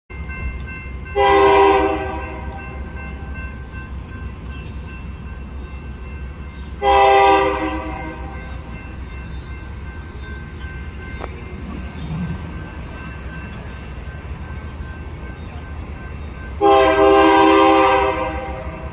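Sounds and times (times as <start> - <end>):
low rumble of train: 0.1 - 18.9
locomotive air horn blasts: 1.2 - 2.7, 6.8 - 8.4, 16.6 - 18.9.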